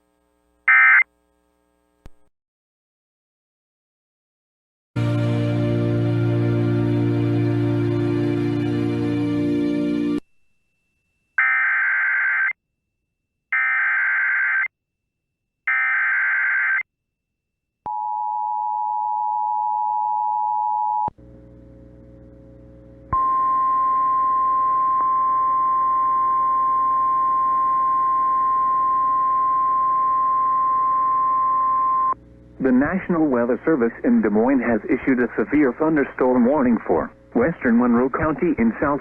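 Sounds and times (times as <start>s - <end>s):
radio hiss: 32.4s - 39.0s.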